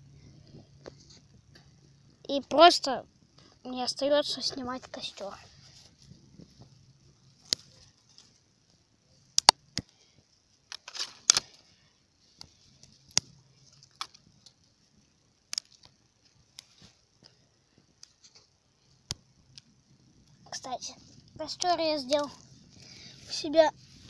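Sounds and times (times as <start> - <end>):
faint steady hiss: 0.0 - 24.0
campfire crackling and popping: 0.2 - 24.0.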